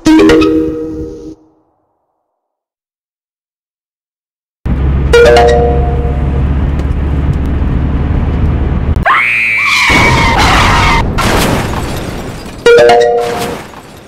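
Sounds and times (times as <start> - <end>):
car engine drone: 4.7 - 11.2
tyres screeching in a skid: 9.0 - 11.3
car crash: 9.7 - 14.0.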